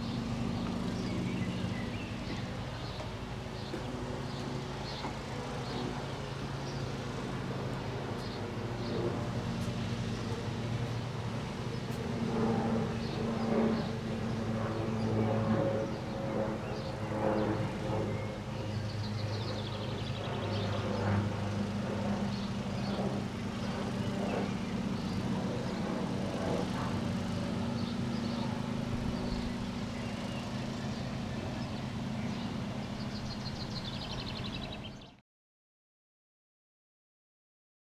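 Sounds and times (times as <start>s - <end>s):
vehicle engine humming: 0.0s - 14.2s.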